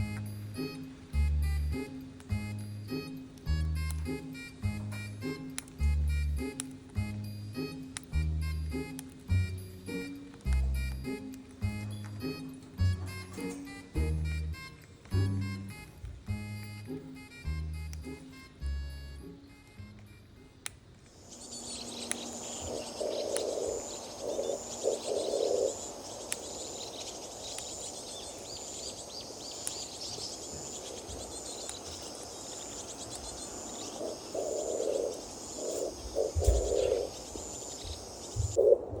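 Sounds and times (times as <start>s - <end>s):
low rustling noise: 0.0s - 34.4s
sharp clicks: 1.8s - 7.0s, 7.6s - 13.8s, 21.8s - 24.6s
parrotlets chirping: 21.2s - 38.6s.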